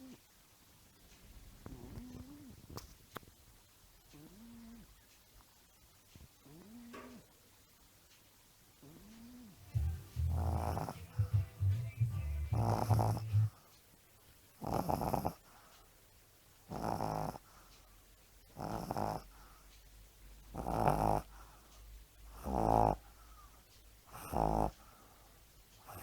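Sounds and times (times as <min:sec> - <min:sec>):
dog snoring: 0:04.1 - 0:04.9, 0:08.8 - 0:09.6, 0:10.2 - 0:11.5, 0:12.5 - 0:13.6, 0:14.6 - 0:15.5, 0:16.7 - 0:17.5, 0:18.5 - 0:19.5, 0:20.5 - 0:21.4, 0:22.3 - 0:23.1, 0:24.1 - 0:24.9.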